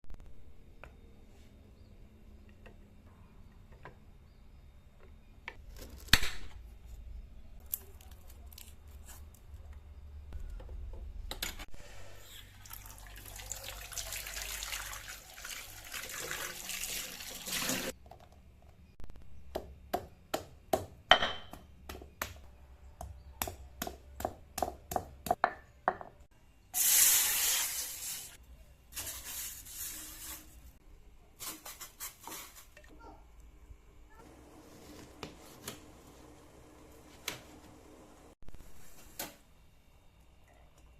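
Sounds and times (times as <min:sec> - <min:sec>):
water running: 0:12.5 - 0:18.0.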